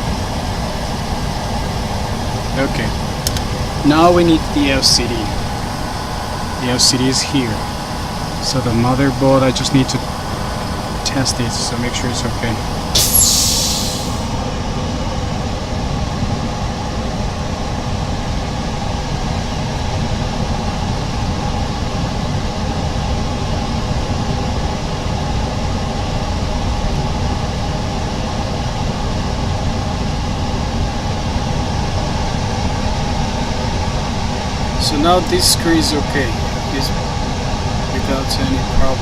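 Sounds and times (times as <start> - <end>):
machinery rumble with hum: 0.0 - 39.0
brief hiss: 13.0 - 14.3.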